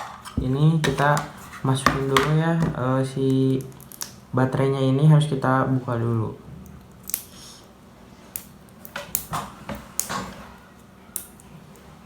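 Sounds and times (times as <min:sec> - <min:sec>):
plastic clicks and knocks: 0:00.3 - 0:02.8.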